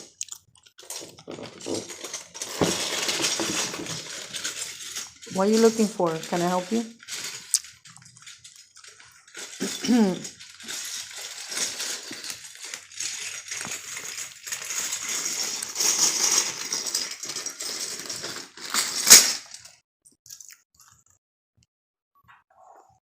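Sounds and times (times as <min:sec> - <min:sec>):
plastic bricks clattering: 0:00.6 - 0:19.7.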